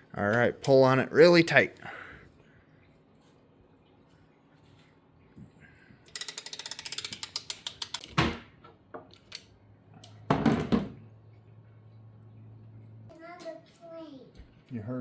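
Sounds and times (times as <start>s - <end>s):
ratchet wrench clicking: 6.1s - 8.1s.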